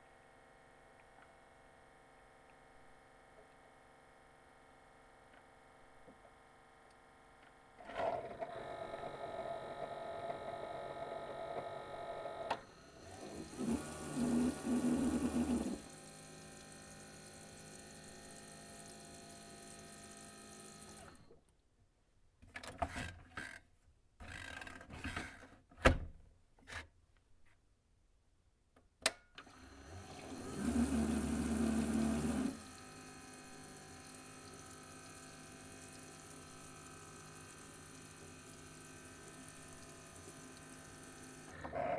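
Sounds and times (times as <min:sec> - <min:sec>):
coffee maker pump humming: 0:08.2 - 0:21.3, 0:29.5 - 0:41.9.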